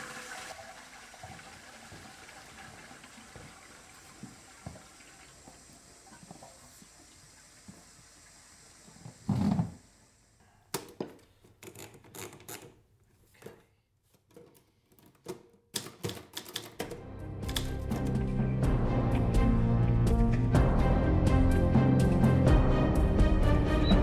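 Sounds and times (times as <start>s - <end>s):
typewriter keys clicking: 15.0s - 18.2s
music: 16.9s - 24.0s.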